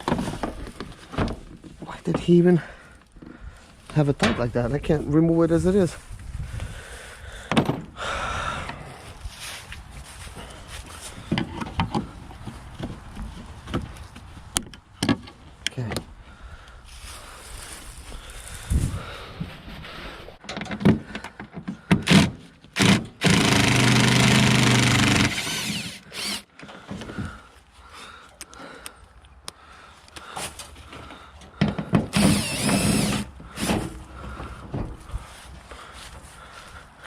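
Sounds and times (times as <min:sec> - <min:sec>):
power drill running: 0:22.1 - 0:26.5, 0:32.1 - 0:33.7.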